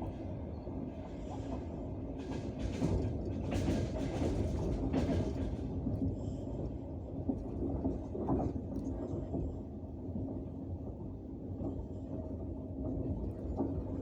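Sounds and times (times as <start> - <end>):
train wheels rumbling on rails: 0.0 - 14.0.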